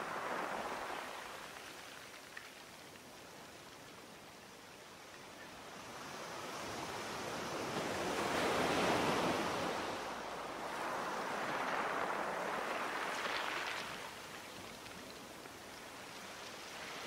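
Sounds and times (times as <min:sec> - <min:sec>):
sea waves washing in: 0:00.0 - 0:02.2, 0:06.0 - 0:17.0.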